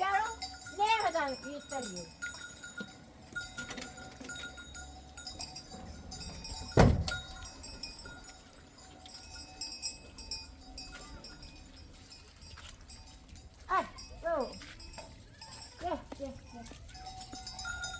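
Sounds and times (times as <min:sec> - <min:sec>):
animal bells clinking: 0:00.0 - 0:17.9
loud thump: 0:06.8 - 0:07.2.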